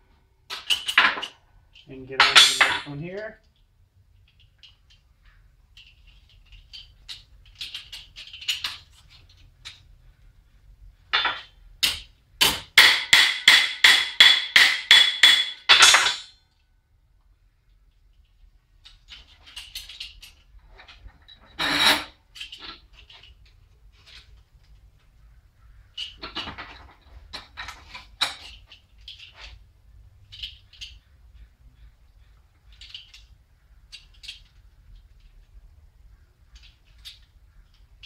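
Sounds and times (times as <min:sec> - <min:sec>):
metal parts clinking: 0:00.5 - 0:09.9, 0:14.4 - 0:16.6, 0:17.9 - 0:24.8, 0:25.8 - 0:31.5, 0:32.6 - 0:35.6
hammer striking metal: 0:02.2 - 0:02.9, 0:12.4 - 0:16.3.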